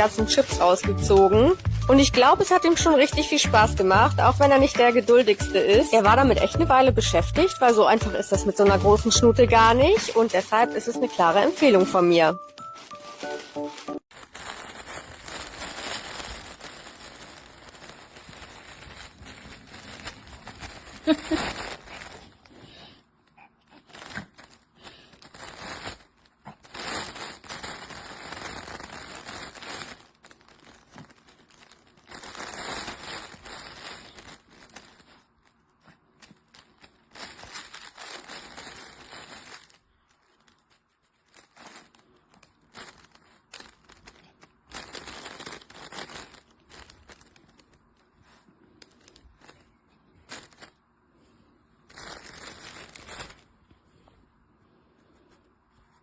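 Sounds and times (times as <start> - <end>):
dog rustling fabric toy: 0.0 - 22.8, 23.8 - 54.2.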